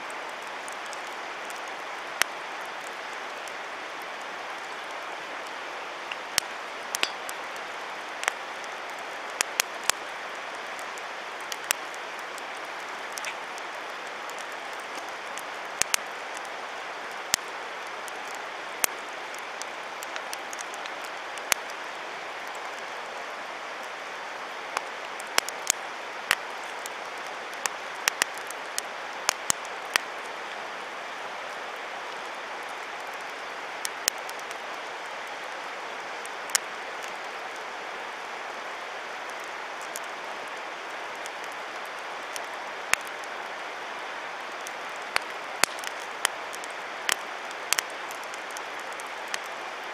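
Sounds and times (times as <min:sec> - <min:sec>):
campfire crackling and popping: 0:00.1 - 0:49.9.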